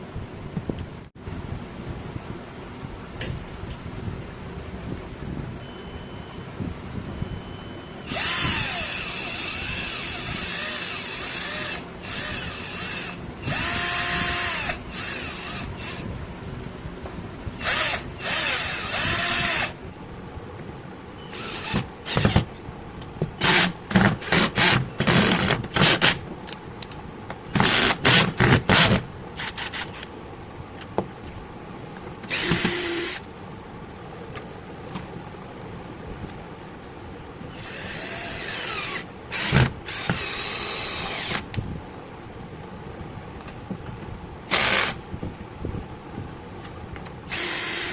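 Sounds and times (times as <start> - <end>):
cordless drill motor whirring: 8.0 - 16.1, 17.6 - 19.8, 21.3 - 22.5, 23.4 - 26.2, 27.6 - 30.1, 32.3 - 33.3, 37.5 - 41.6, 44.5 - 45.0, 47.3 - 47.9.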